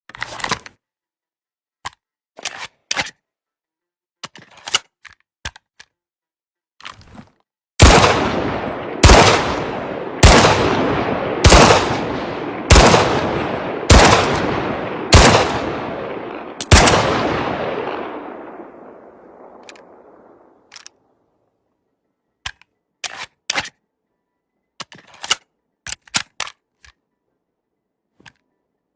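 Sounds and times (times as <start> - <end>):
pistol shots echoing: 7.8 - 20.3.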